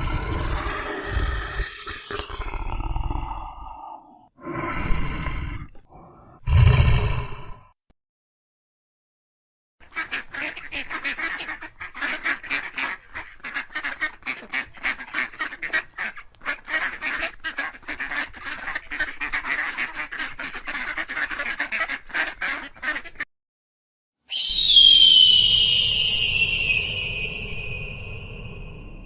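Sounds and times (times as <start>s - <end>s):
birds calling rapidly: 9.9s - 23.1s, 24.3s - 28.7s
high whistling tone: 24.3s - 29.0s.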